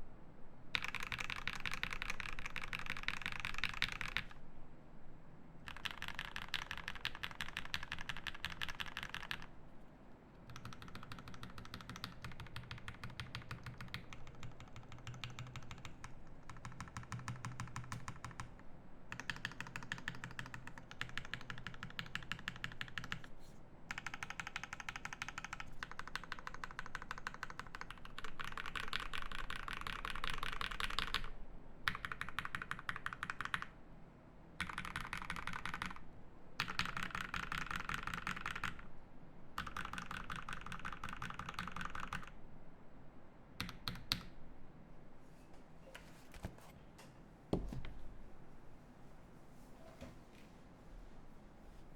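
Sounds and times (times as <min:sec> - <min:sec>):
fast typing on mechanical keyboard: 0:00.7 - 0:04.4, 0:05.7 - 0:09.5, 0:10.5 - 0:23.3, 0:23.9 - 0:31.3, 0:31.9 - 0:33.7, 0:34.6 - 0:38.9, 0:39.6 - 0:42.4, 0:43.6 - 0:44.3.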